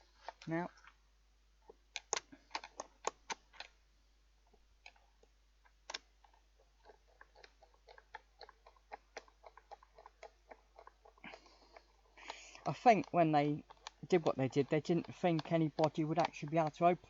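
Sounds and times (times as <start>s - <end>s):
screwdriver clicking on plastic casing: 2.0s - 3.7s, 11.7s - 17.0s.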